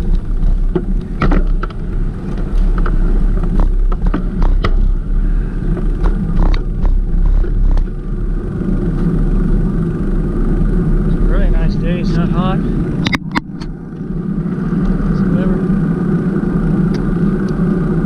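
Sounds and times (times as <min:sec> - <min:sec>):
bicycle clicks and rattles: 0:00.0 - 0:09.2
wind rumbling on microphone: 0:00.0 - 0:18.0.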